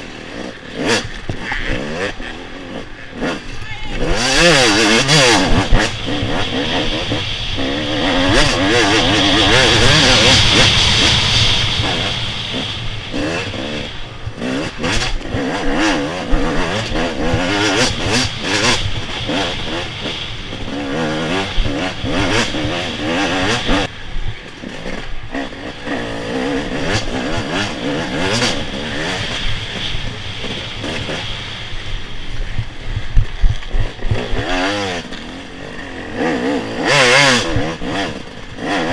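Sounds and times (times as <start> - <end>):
motorcycle engine revving: 0.0 - 38.9
loud rushing hiss: 4.1 - 14.9.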